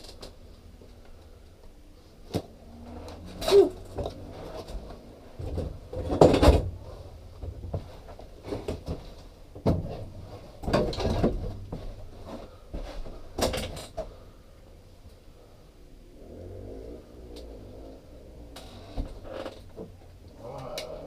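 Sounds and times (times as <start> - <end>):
objects knocking and clunking: 3.2 - 14.2.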